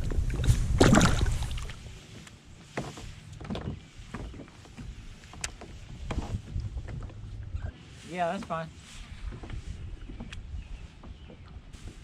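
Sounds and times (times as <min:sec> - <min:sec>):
water splashing: 0:00.0 - 0:02.2
wind rumble on microphone: 0:00.0 - 0:02.2, 0:03.1 - 0:12.0.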